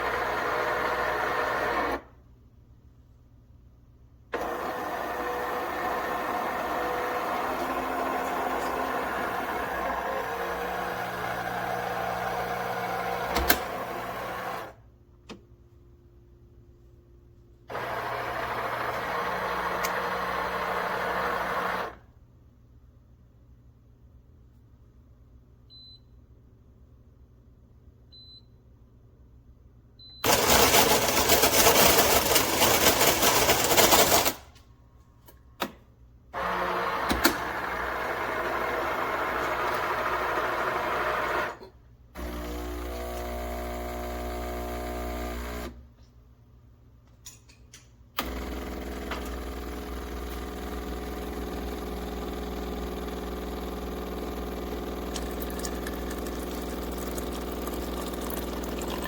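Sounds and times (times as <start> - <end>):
grinder grinding coffee beans: 4.4 - 14.6, 17.8 - 21.8, 30.3 - 34.4, 36.4 - 41.4, 49.2 - 59.0
coffee maker pump brewing: 4.4 - 14.7, 17.7 - 22.0, 30.2 - 34.3, 36.4 - 41.5, 48.2 - 59.0.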